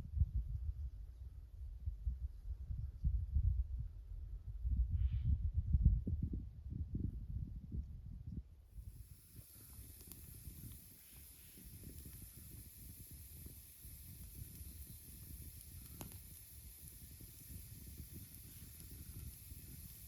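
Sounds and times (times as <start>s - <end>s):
campfire burning: 8.8s - 20.0s
fire crackles: 8.8s - 20.0s.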